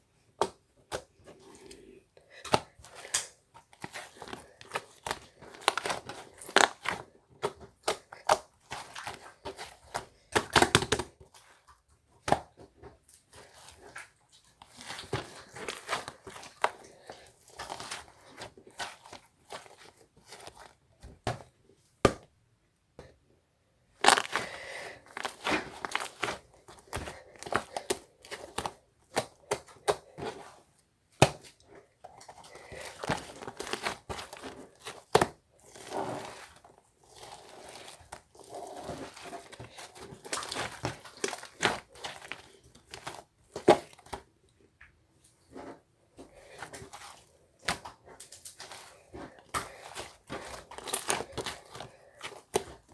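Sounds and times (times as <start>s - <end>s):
slime squishing and popping: 2.4s - 11.1s, 24.0s - 30.6s, 46.6s - 52.9s.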